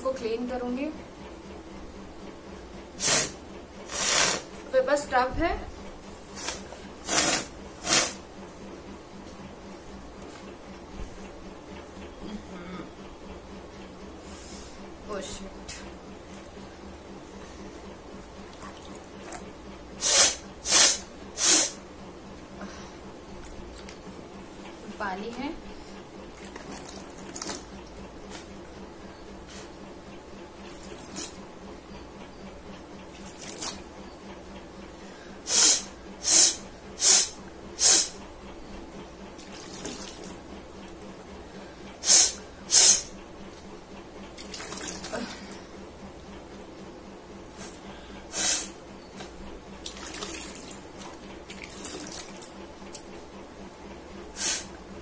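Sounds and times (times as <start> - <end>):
forceful nose blowing: 3.0 - 4.5, 6.4 - 8.2, 20.0 - 21.8, 35.4 - 38.2, 42.0 - 43.1, 48.3 - 48.8, 54.4 - 54.7.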